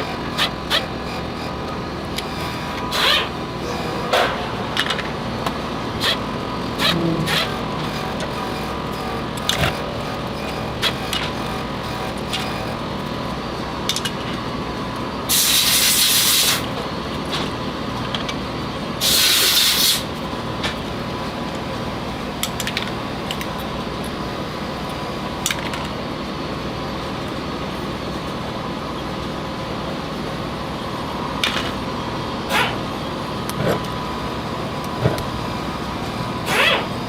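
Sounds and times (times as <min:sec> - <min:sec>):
steady background hum: 0:00.0 - 0:37.0
hissing spray bursts: 0:15.3 - 0:16.7, 0:19.0 - 0:20.1.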